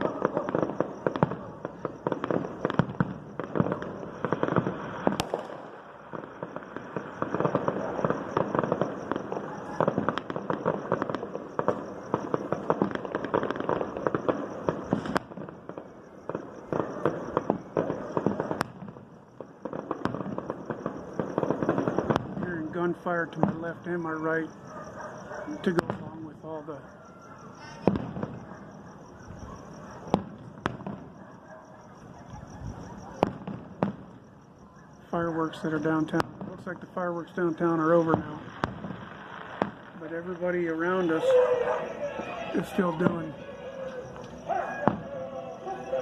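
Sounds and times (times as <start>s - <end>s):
sharp firework cracks: 0.0s - 22.7s, 38.0s - 40.1s
firecrackers banging and crackling: 0.0s - 26.4s, 35.0s - 45.6s.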